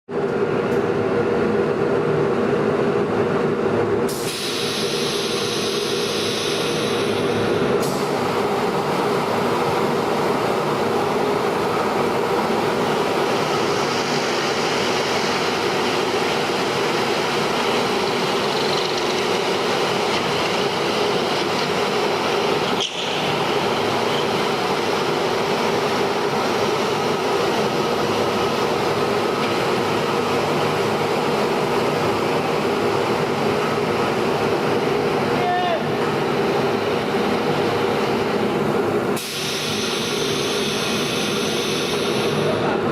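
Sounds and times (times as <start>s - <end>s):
high hiss: 4.1s - 8.4s, 39.2s - 42.6s
drilling machine humming: 4.8s - 35.4s.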